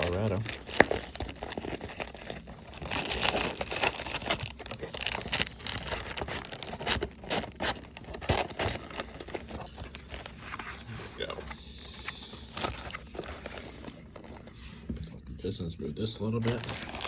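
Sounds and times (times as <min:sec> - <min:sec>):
packaging tearing and crinkling: 0:00.0 - 0:10.9, 0:12.4 - 0:14.4, 0:16.4 - 0:17.0.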